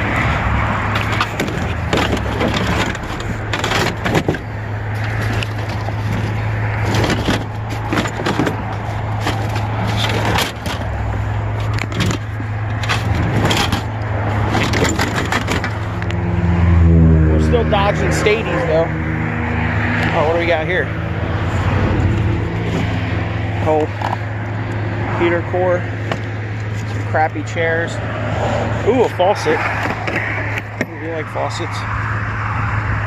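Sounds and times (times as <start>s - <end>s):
hard objects clattering and scraping: 0.0s - 16.2s, 28.4s - 31.1s
truck engine idling: 0.0s - 16.4s.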